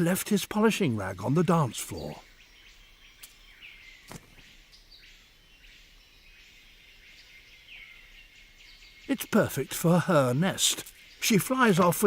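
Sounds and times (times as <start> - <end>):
sharp clicks: 3.2 - 3.4.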